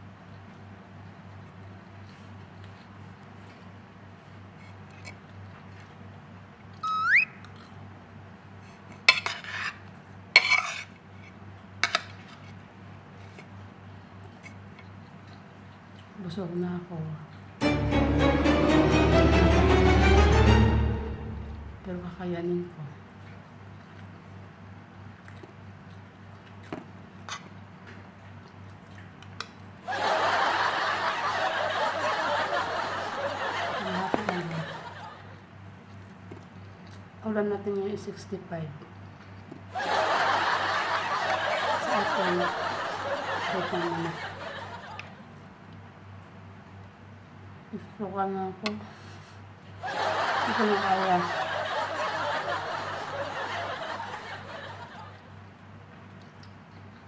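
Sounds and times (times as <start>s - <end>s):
rising squeak: 6.8s - 7.4s
crowd laughter: 17.6s - 21.8s, 29.8s - 35.4s, 39.7s - 45.2s, 49.8s - 55.3s
faint eating clicks: 24.9s - 29.8s, 55.9s - 57.0s.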